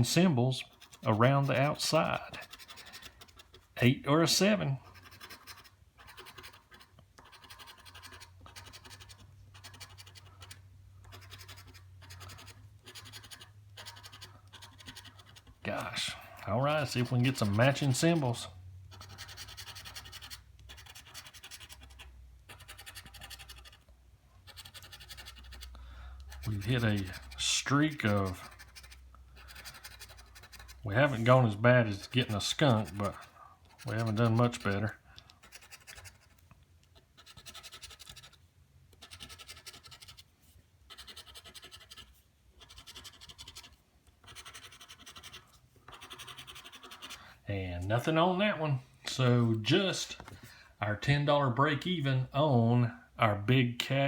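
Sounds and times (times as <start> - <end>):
lottery ticket being scratched: 0.0 - 23.8, 24.4 - 36.4, 37.0 - 48.2.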